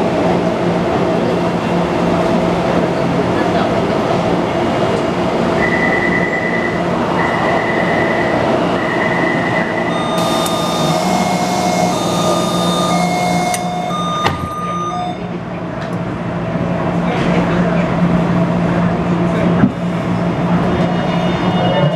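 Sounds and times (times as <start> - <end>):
train rail and motor noise: 0.0 - 21.9
high electric whine: 9.9 - 15.2.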